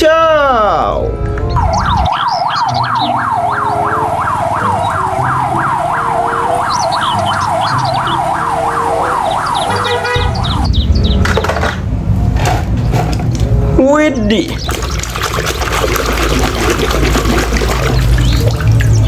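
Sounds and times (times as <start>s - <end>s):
electronic yelp siren: 1.5s - 11.4s.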